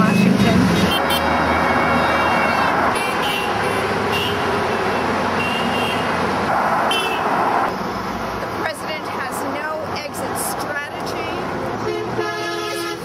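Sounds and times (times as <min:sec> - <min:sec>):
road traffic passing: 0:00.0 - 0:13.0
car horns honking: 0:00.7 - 0:07.6, 0:11.8 - 0:13.0.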